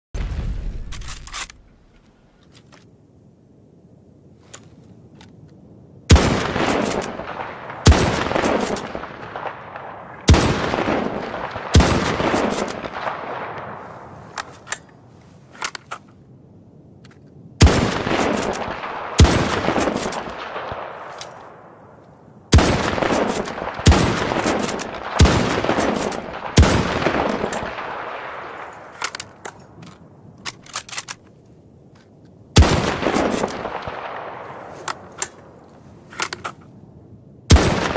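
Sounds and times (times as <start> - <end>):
rifle shots with echo: 6.1 - 14.2, 17.6 - 21.8, 22.5 - 29.4, 32.6 - 35.6, 37.5 - 37.9.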